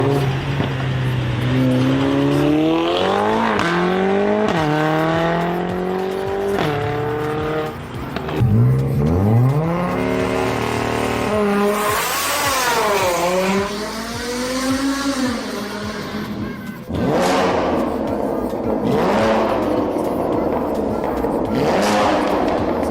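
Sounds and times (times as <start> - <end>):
car engine accelerating hard: 0.0 - 22.9.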